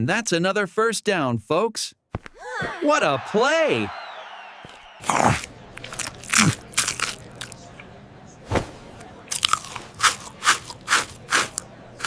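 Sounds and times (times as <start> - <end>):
short crunching sounds: 4.7 - 7.6, 9.3 - 11.7.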